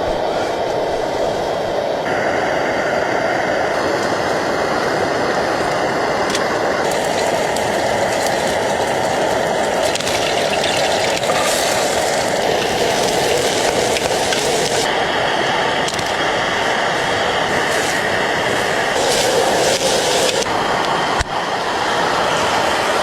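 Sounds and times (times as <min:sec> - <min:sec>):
rushing snow storm wind: 0:00.0 - 0:23.0
hissing layer with faint crackles: 0:03.7 - 0:14.9, 0:15.8 - 0:23.0.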